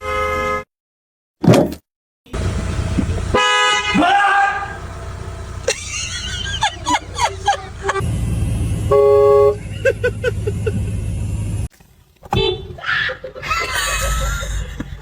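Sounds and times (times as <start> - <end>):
air horn blast: 2.4 - 5.6, 8.7 - 9.6
low steady rumble: 2.4 - 11.7.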